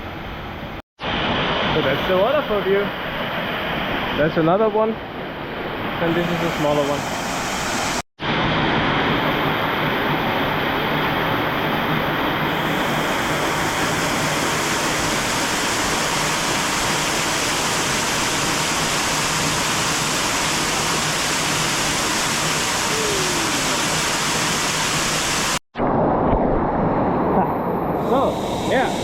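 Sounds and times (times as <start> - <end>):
waterfall splashing: 12.7 - 25.6.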